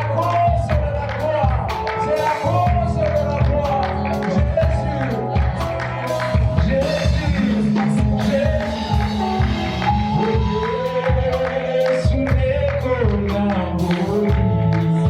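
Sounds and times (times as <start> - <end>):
live gospel band: 0.0 - 15.0
person singing melody: 0.0 - 15.0.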